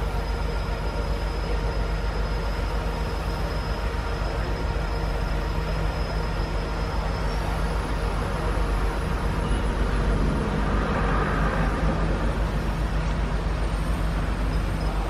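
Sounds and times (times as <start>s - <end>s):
crane diesel engine drone: 0.0s - 15.0s.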